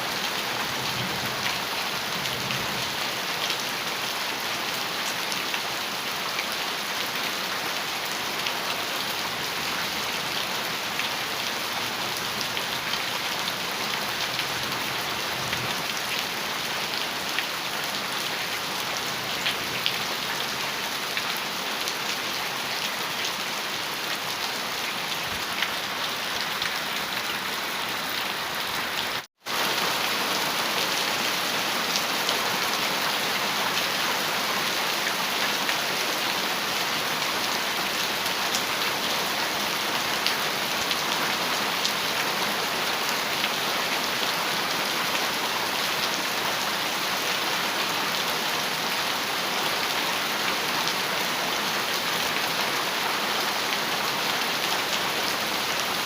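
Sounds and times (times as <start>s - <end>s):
heavy rain on a metal roof: 0.0s - 56.0s.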